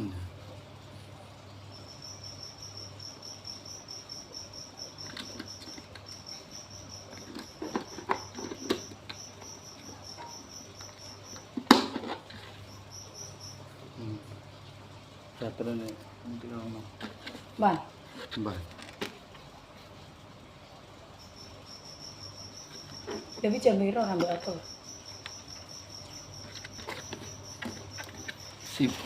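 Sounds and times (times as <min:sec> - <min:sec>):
cricket chirping: 0:01.5 - 0:14.8, 0:21.0 - 0:29.0
handling knocks and rustles: 0:07.1 - 0:12.6, 0:26.1 - 0:29.0.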